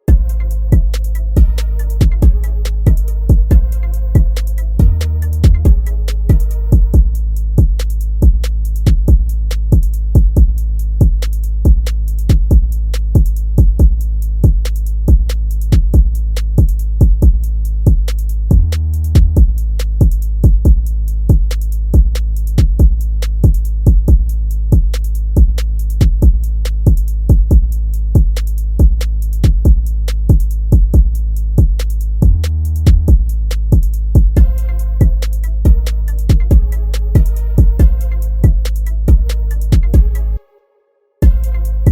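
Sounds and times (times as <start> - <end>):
drum machine hits: 0.0 - 40.4, 41.2 - 41.9
deep bass: 0.0 - 40.5, 41.2 - 41.9.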